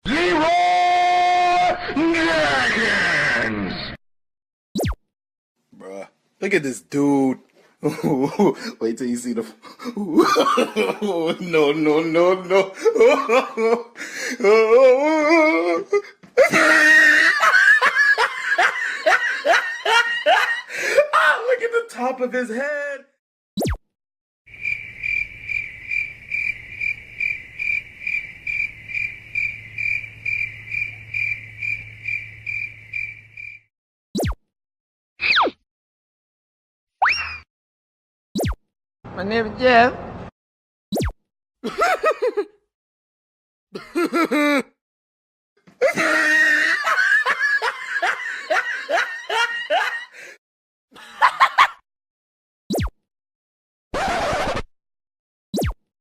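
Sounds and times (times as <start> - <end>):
person laughing: 7.8 - 8.8, 9.6 - 21.3, 41.6 - 42.6, 43.8 - 44.8, 45.8 - 50.4, 51.0 - 51.8
cricket chirping: 24.5 - 33.7.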